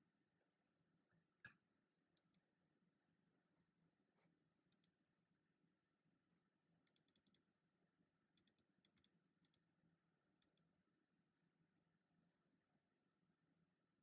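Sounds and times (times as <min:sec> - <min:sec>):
typing on computer keyboard: 0:06.9 - 0:07.4.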